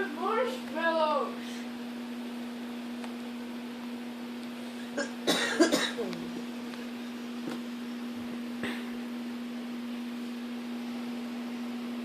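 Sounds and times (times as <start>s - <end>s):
steady low hum: 0.0s - 12.0s
person coughing: 4.9s - 6.2s, 8.6s - 9.0s.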